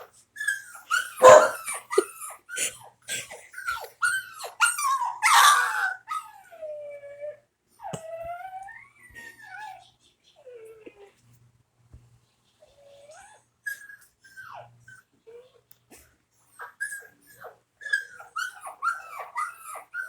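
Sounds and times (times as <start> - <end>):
puppy whining: 0.4 - 2.7, 3.5 - 11.2, 12.6 - 15.6, 16.5 - 20.0
puppy yelping: 0.6 - 2.1, 3.8 - 6.4, 16.6 - 20.0.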